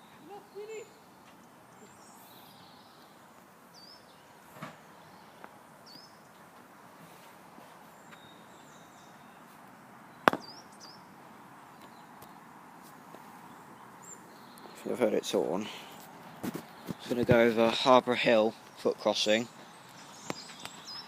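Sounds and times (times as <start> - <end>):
faint bird chirps: 0.0 - 6.4
sharp knock: 10.3 - 10.6.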